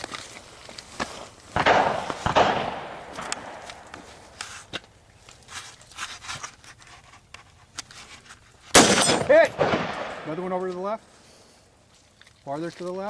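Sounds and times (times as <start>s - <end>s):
footsteps: 0.0s - 8.6s, 9.3s - 13.0s
rifle shots echoing: 1.6s - 4.4s, 8.7s - 10.6s.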